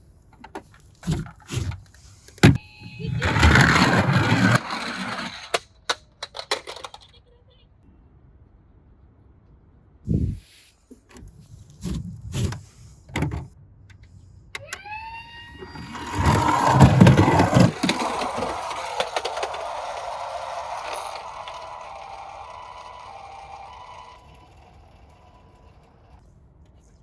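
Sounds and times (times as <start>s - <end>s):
toy car whirring: 1.7s - 7.2s, 14.6s - 26.2s
toy car rattling roll: 3.1s - 7.2s, 15.6s - 26.2s
toy cars knocking: 3.2s - 7.2s, 15.9s - 25.7s.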